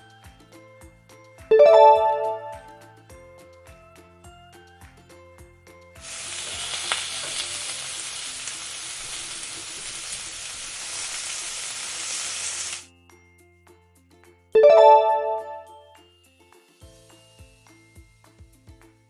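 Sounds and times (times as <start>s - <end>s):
quiet keyboard music: 1.5s - 2.9s, 14.6s - 16.0s
sizzling hiss: 6.0s - 12.9s.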